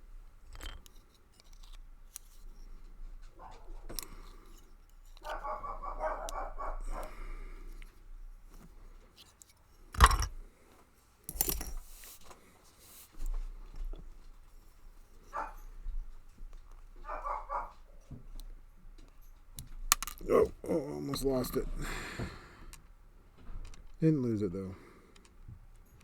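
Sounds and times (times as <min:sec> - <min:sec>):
metallic clicks and scrapes of tools: 0:00.4 - 0:05.4, 0:07.7 - 0:10.4, 0:11.3 - 0:13.3.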